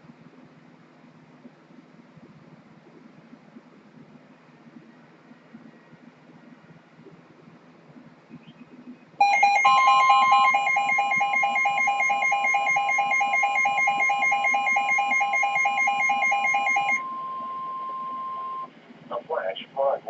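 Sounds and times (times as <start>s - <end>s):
rapid loud beeping: 9.2s - 18.7s
steady high alarm tone: 9.2s - 18.7s.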